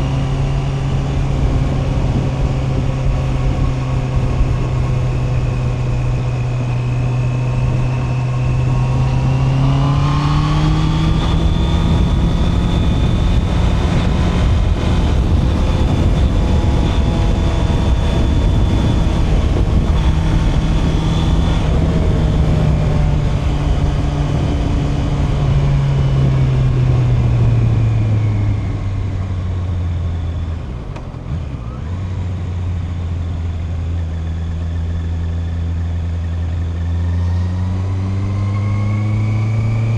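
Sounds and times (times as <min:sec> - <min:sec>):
motorcycle engine revving: 0:00.0 - 0:39.9
wind rumble on microphone: 0:00.0 - 0:39.9.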